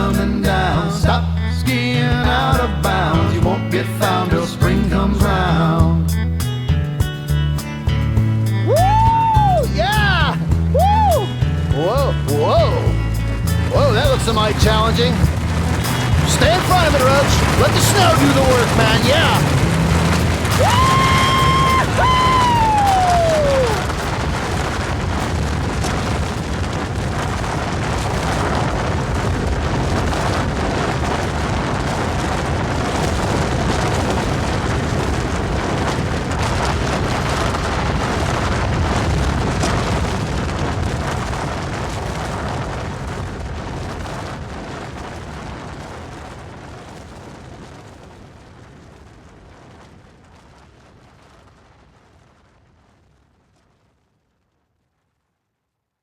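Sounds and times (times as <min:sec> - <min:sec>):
avalanche rumbling roar: 0:00.0 - 0:06.1, 0:08.4 - 0:51.4
person shouting: 0:08.7 - 0:11.3, 0:20.6 - 0:23.9.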